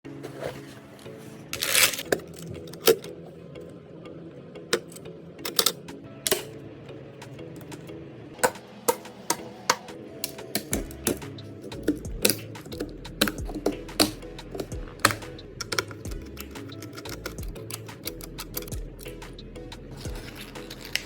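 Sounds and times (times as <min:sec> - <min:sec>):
background music chords: 0:00.0 - 0:21.0
sharp clicks: 0:09.0 - 0:19.4.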